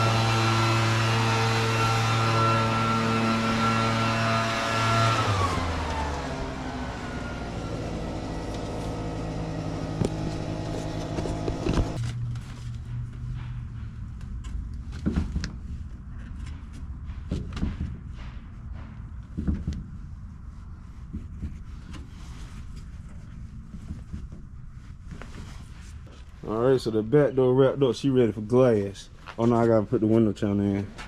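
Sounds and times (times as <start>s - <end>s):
vehicle engine running: 0.0s - 14.8s.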